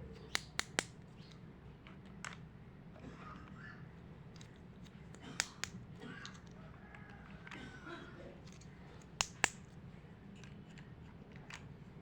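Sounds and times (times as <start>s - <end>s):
toy pieces clicking: 0.3s - 0.9s, 5.1s - 6.6s, 8.5s - 9.6s.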